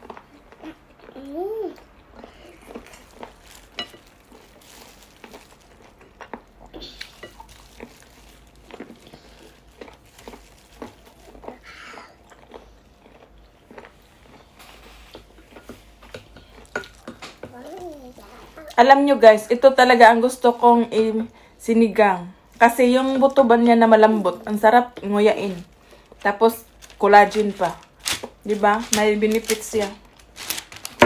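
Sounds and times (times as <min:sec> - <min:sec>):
chewing and mouth smacks: 0:01.8 - 0:17.4.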